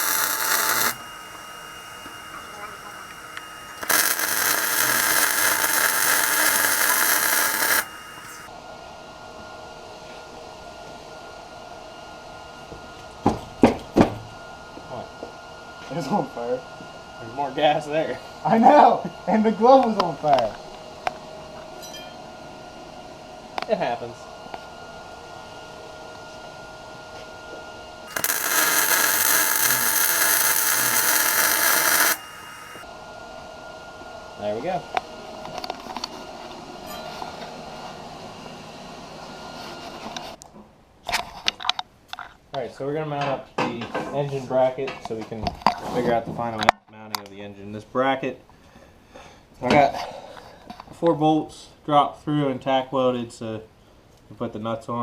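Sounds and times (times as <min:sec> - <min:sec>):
faint steady hum: 0:00.0 - 0:08.5
metalworking tool hissing crackle: 0:00.0 - 0:08.5, 0:28.1 - 0:32.9
steady background hum: 0:00.0 - 0:42.4.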